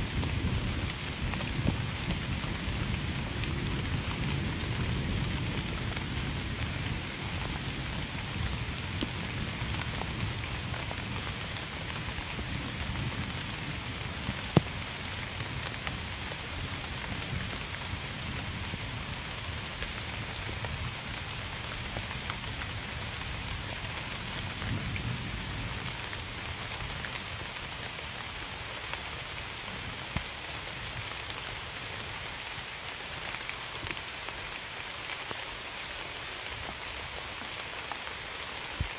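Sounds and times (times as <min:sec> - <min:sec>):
steady rain: 0:00.0 - 0:38.9.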